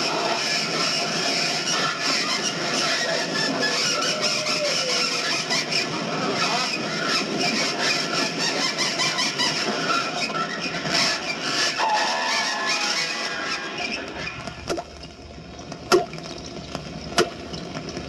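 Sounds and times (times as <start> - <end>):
faint squeal: 0.1 - 14.5.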